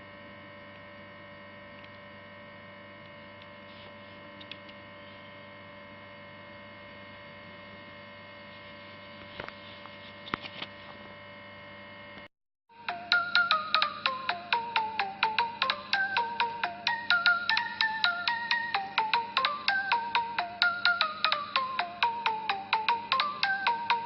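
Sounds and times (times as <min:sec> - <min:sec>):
electrical hum: 0:00.0 - 0:24.0
plucked ringtone melody: 0:12.8 - 0:24.0.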